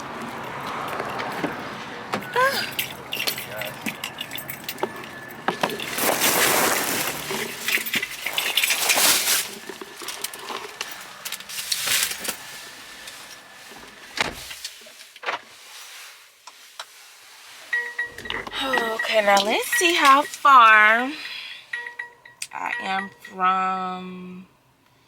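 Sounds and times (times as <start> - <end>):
keys jangling: 2.2 - 12.5.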